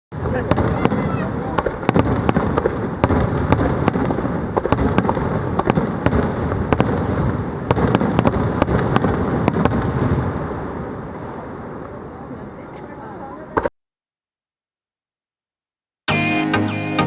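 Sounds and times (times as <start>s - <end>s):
fireworks cracking: 0.1s - 13.7s.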